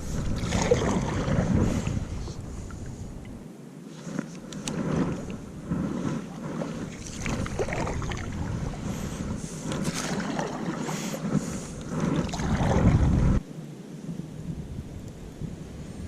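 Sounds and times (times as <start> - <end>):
water lapping against kayak: 0.0 - 3.4, 4.0 - 13.4
wind buffeting microphone: 0.0 - 3.5, 4.4 - 16.0.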